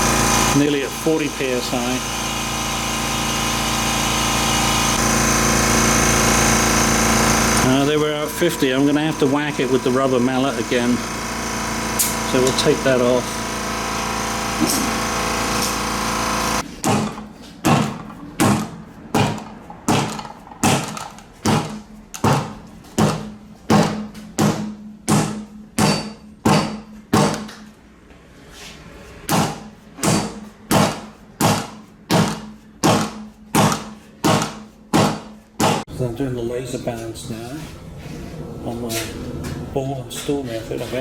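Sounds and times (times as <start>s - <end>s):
air compressor hum: 0.0s - 27.8s, 28.4s - 41.0s
rubber mallet striking tire: 16.8s - 27.7s, 29.3s - 35.9s.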